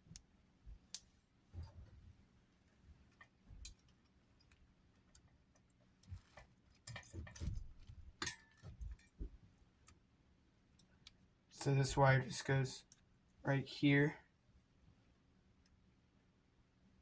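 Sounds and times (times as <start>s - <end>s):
small metal parts clinking: 6.8s - 7.4s.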